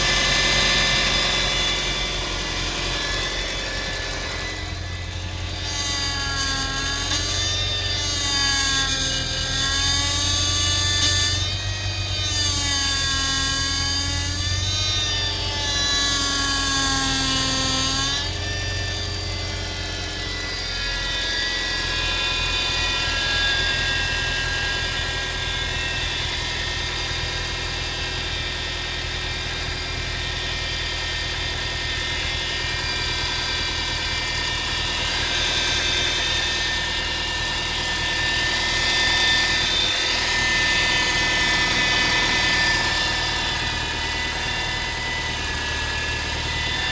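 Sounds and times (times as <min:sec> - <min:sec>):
power steering pump whining: 0:00.0 - 0:06.1.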